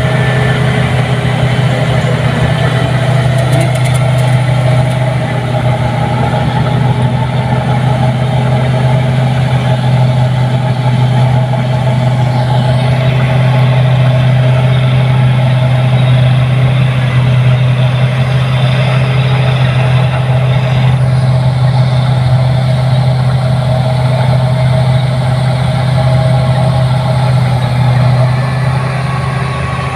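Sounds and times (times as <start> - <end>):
deep engine drone: 0.0 - 29.9
machinery noise: 0.0 - 29.9.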